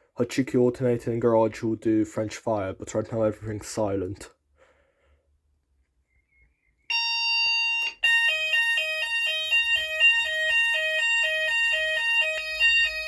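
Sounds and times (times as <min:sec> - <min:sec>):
fire alarm two-tone sounder: 0:06.9 - 0:13.0.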